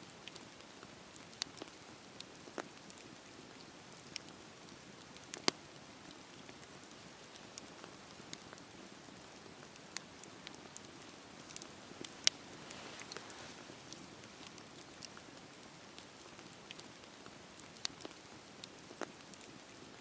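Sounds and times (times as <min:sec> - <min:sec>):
burning wood crackling and popping: 0:00.1 - 0:20.0
campfire hissing: 0:07.6 - 0:19.9.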